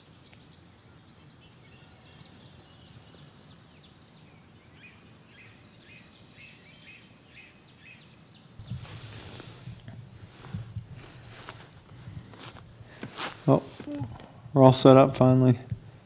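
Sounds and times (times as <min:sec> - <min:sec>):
faint songbird chirps: 0:00.0 - 0:14.4
low outdoor background: 0:00.0 - 0:16.0
rustle: 0:06.5 - 0:14.4.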